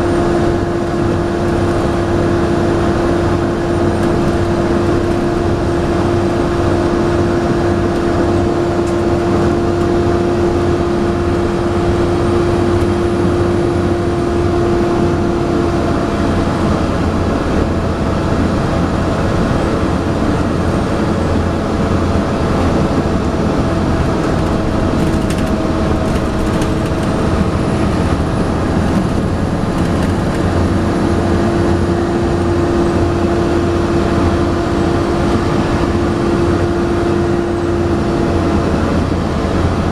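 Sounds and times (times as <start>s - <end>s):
bus diesel engine drone: 0.0s - 39.9s
cooling fan hum: 0.0s - 39.9s
rattles: 24.1s - 30.6s.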